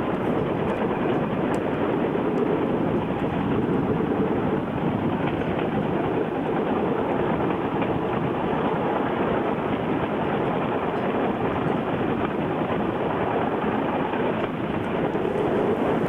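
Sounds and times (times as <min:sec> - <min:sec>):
rail cart motor running: 0:14.8 - 0:16.0.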